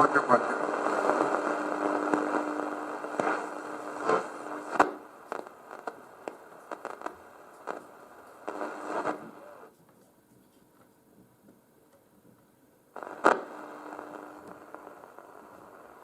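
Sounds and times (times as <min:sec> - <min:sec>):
sharp radio clicks: 0:00.0 - 0:09.7, 0:13.0 - 0:16.0
radio static hiss and crackle: 0:00.0 - 0:09.8, 0:12.9 - 0:16.0.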